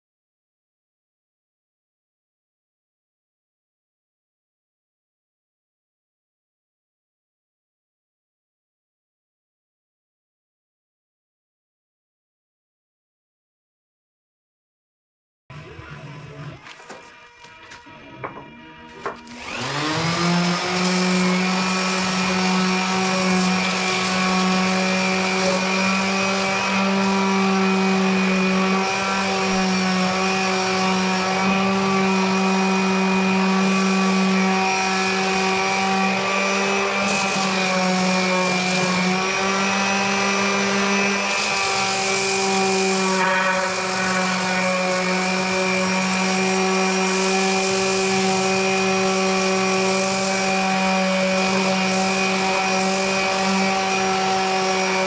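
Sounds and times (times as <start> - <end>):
electric sander running: 16.7 - 55.0.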